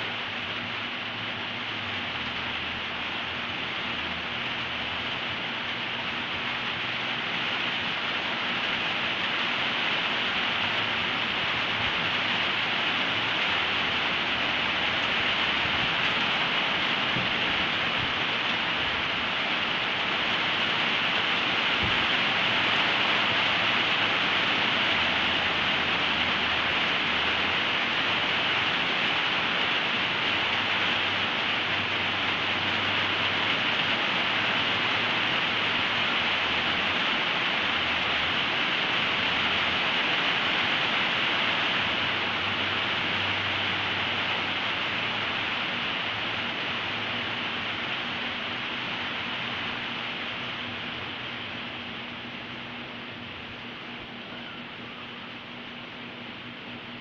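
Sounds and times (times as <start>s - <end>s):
steady hiss: 0.0s - 57.0s
faint low hum: 41.4s - 57.0s.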